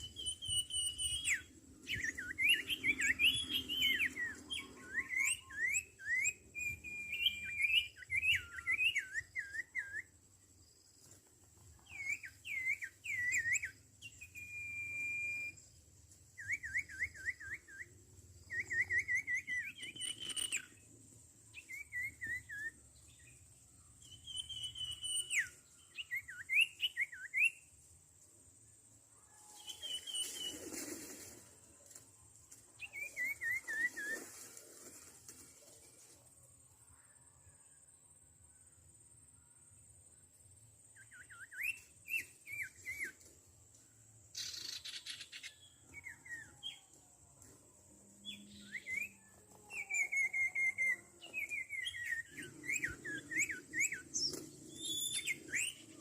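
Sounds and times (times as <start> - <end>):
bird calling with whistled notes: 0.0 - 10.4, 11.8 - 27.8, 29.2 - 31.6, 32.7 - 36.2, 40.9 - 43.3, 44.3 - 47.0, 48.1 - 56.0
brief rustle: 30.1 - 32.6.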